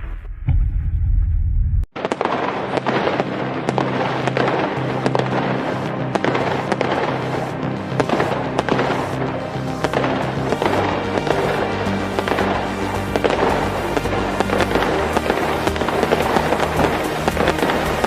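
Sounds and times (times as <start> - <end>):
firework cracks: 1.9 - 18.0
ringtone music with heavy bass: 6.9 - 18.0.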